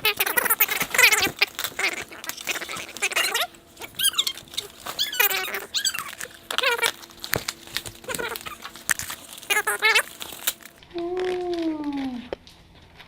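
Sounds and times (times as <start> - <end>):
squeaky sped-up voices: 0.0 - 7.0, 8.0 - 8.8, 9.4 - 10.1.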